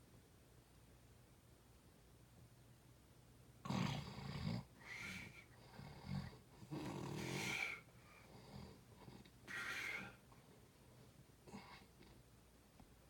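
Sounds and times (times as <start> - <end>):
rattling snores: 3.7 - 4.7, 5.7 - 7.8
soft wheezy breaths: 4.8 - 12.3.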